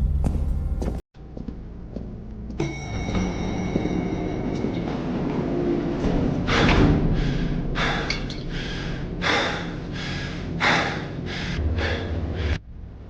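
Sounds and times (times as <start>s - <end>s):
low rumble: 0.0s - 13.0s
person breathing hard: 6.4s - 12.6s.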